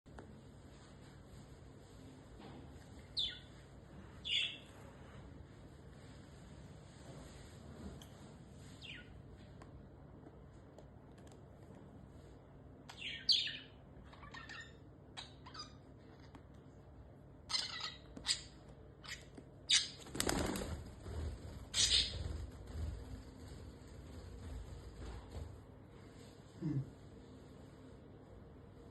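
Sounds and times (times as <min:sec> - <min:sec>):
parrot chirping: 0:12.9 - 0:15.8, 0:17.5 - 0:20.0, 0:21.7 - 0:22.2.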